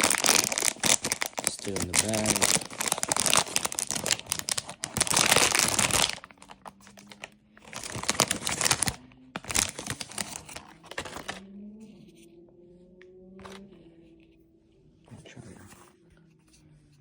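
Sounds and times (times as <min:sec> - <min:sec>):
plastic bag crinkling: 0:00.0 - 0:11.4.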